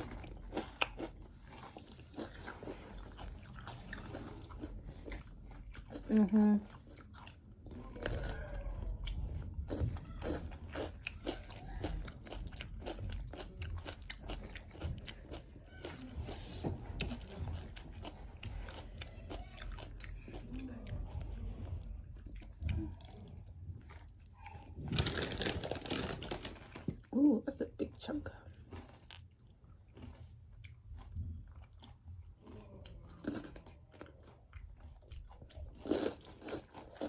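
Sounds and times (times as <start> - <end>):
wet chewing: 0.0 - 27.2, 28.5 - 37.0
crunching chips: 7.0 - 16.1, 24.9 - 27.1, 28.7 - 37.0.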